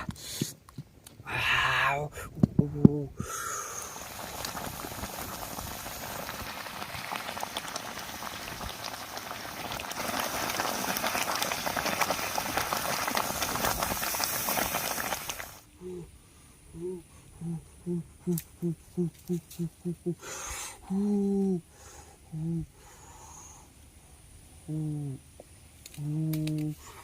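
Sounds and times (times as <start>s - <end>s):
food hissing and crackling in pot: 3.5s - 15.7s.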